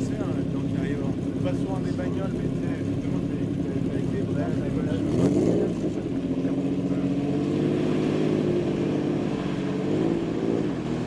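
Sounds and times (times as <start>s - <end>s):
race vehicle engine revving: 4.2s - 11.0s.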